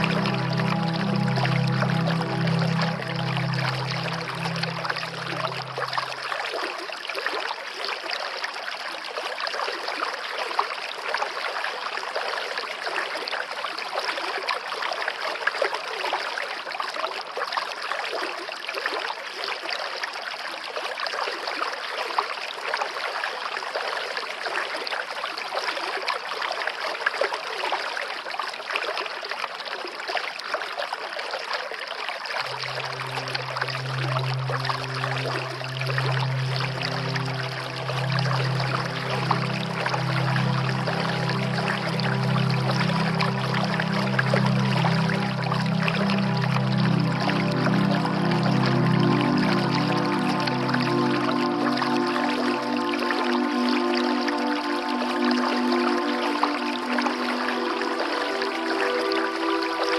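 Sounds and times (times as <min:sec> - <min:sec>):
waterfall rushing: 0:00.0 - 0:06.4, 0:32.4 - 0:59.9
low steady hum: 0:00.0 - 0:06.6, 0:32.4 - 0:58.4.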